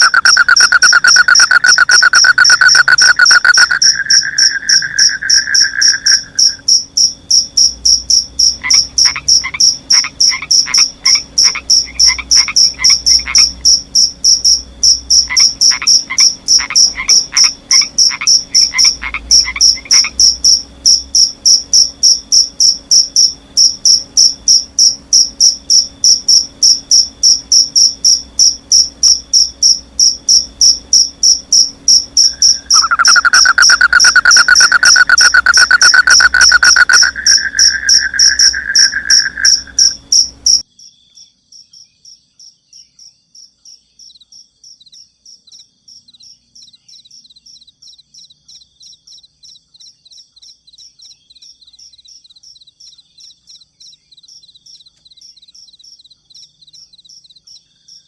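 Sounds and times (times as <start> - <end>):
frog calling: 0.0 - 40.6
insects chirping in a high pulse: 0.0 - 58.0
low insect trill: 0.0 - 58.0.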